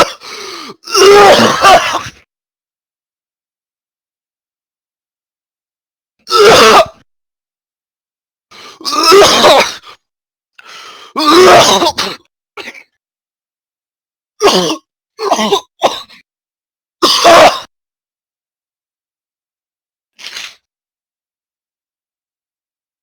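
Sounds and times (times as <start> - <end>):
person coughing: 12.6 - 12.9.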